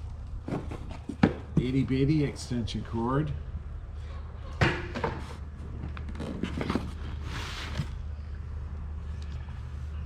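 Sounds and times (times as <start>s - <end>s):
steady low hum: 0.0s - 10.0s
items knocking and rustling: 0.4s - 1.9s, 4.6s - 7.2s.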